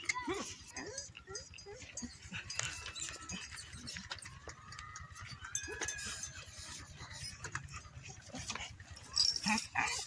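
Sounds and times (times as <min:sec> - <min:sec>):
dog howling: 0:00.3 - 0:07.3.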